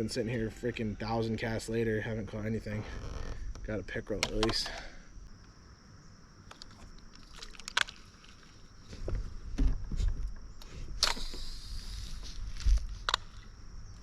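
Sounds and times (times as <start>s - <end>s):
high buzz of insects: 0.0s - 14.0s
handling clicks and knocks: 4.1s - 4.8s.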